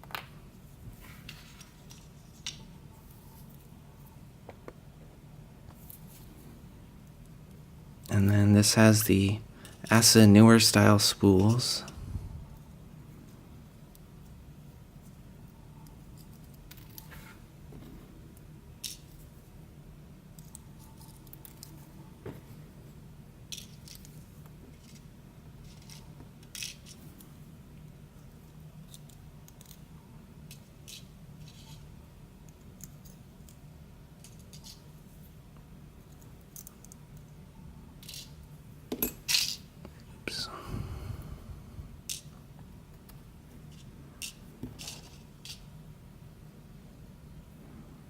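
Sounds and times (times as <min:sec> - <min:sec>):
faint low hum: 0:00.0 - 0:48.0.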